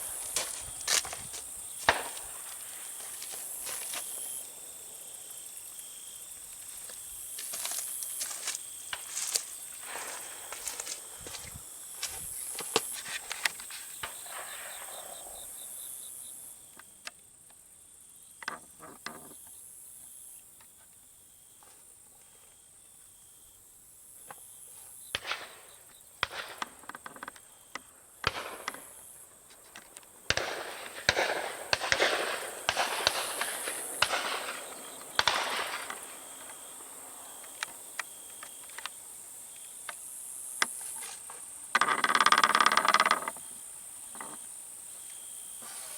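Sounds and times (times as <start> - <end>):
rustling noise: 0.0 - 4.2, 6.7 - 14.0
distant shotgun shots: 1.8 - 2.5, 25.2 - 26.8, 28.2 - 29.0, 30.3 - 36.8
high-pitched insect drone: 33.1 - 45.9.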